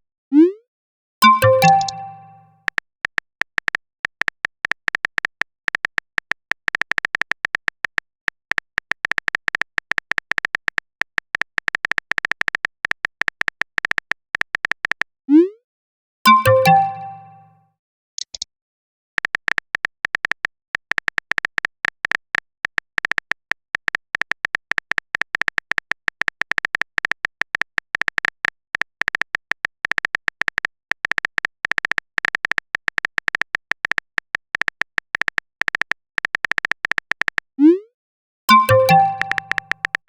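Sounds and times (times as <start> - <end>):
message sent pop: 1.2 - 2.5, 16.3 - 17.5, 38.5 - 40.0
phone keyboard typing clicks: 1.2 - 15.0, 16.3 - 17.5, 38.5 - 40.0.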